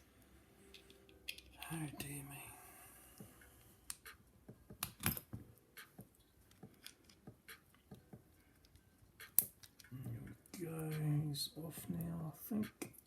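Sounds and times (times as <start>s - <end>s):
metallic tool clicks and scrapes: 0.7s - 1.8s.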